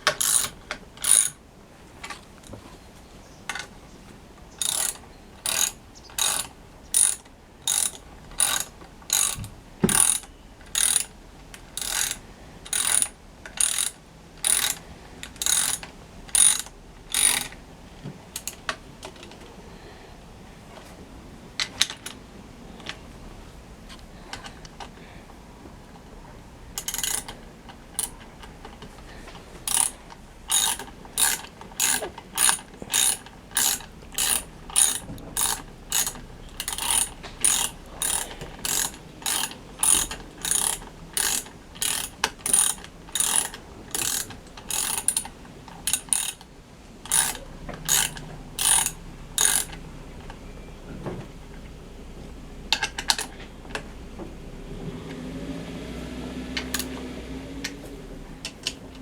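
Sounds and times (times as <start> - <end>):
ratchet wrench clicking: 0.0 - 1.4, 4.6 - 11.1, 11.8 - 17.6, 26.8 - 27.4, 28.0 - 28.5, 29.6 - 49.8, 56.7 - 56.9.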